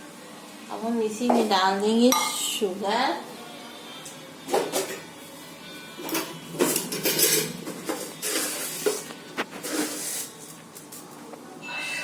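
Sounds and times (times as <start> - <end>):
spoon clinking against a pot: 2.1 - 2.6.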